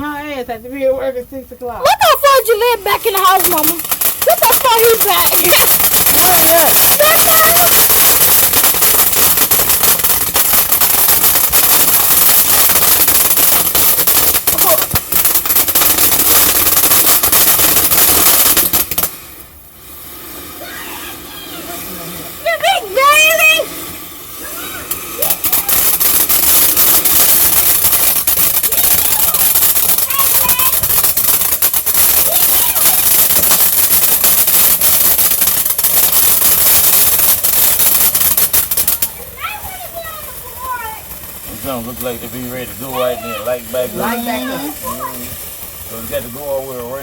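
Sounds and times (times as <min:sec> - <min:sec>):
fireworks crackling bangs: 0:00.0 - 0:47.0
quiet hiss: 0:40.7 - 0:47.0.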